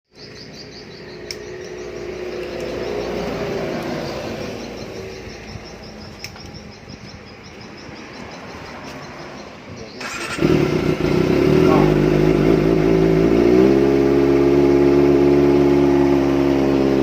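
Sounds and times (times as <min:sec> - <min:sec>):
insects chirping: 0:00.1 - 0:10.8.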